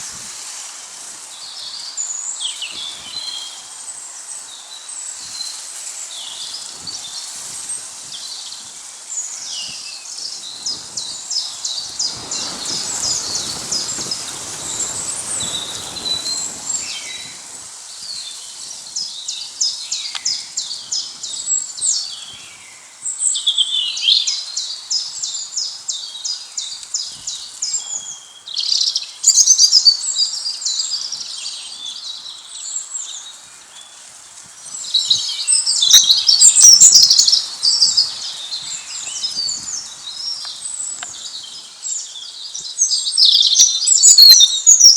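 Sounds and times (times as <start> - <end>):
songbirds chirping and trilling: 1.2 - 44.9.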